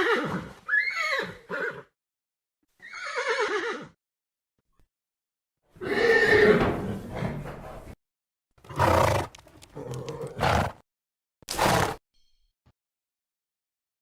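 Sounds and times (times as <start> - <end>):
horse calling: 5.8 - 7.4, 8.7 - 10.8.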